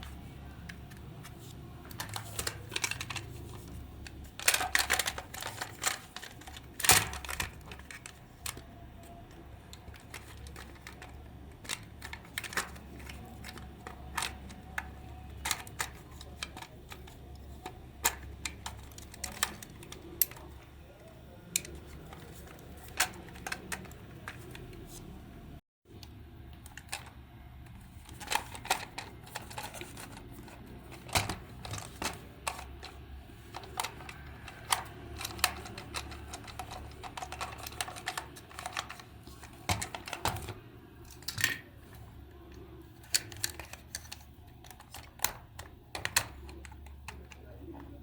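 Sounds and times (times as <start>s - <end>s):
small tools clicking and tapping: 28.1s - 40.5s.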